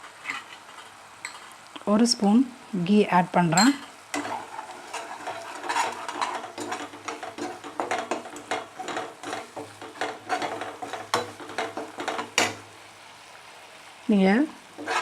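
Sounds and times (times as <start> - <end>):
utensil scraping in a pan: 0.0 - 1.6, 3.8 - 12.7, 14.7 - 15.0.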